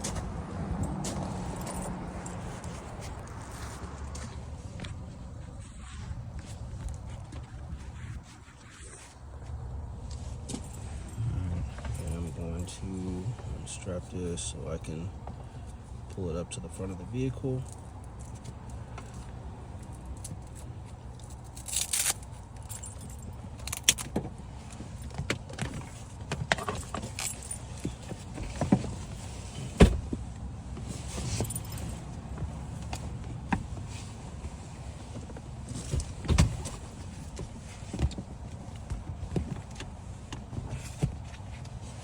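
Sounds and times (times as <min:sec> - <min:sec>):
metallic clinks and knocks of equipment: 0:00.8 - 0:03.4, 0:17.6 - 0:24.2, 0:25.8 - 0:28.4, 0:31.1 - 0:32.0.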